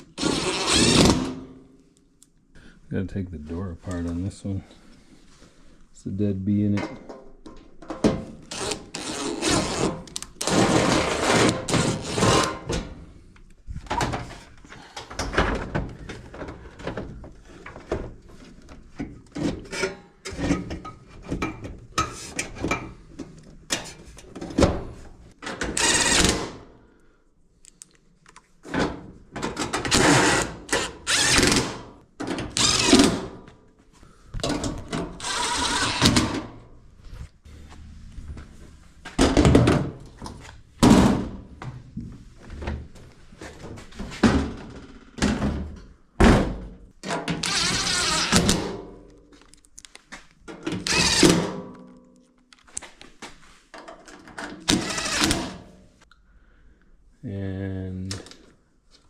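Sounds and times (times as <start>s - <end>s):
drill-driver running screws: 25.8s - 26.4s, 29.9s - 31.7s, 32.5s - 33.2s, 35.2s - 36.2s, 47.4s - 48.4s, 50.8s - 51.3s, 54.7s - 55.4s.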